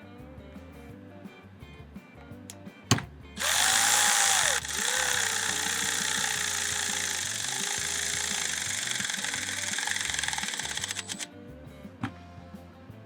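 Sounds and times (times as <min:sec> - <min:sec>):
sharp click: 0:02.9 - 0:11.3
power tool whirring: 0:03.4 - 0:11.3.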